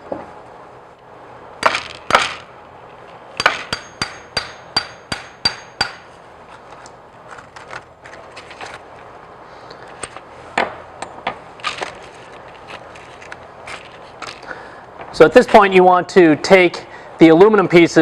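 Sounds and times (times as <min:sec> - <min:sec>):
hammer striking metal punch: 0:01.6 - 0:02.5, 0:03.4 - 0:06.1.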